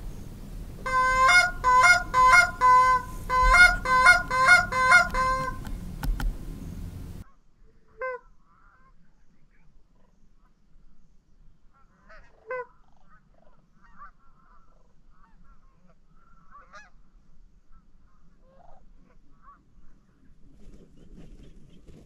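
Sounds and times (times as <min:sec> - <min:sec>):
goose honking: 0:00.0 - 0:07.2.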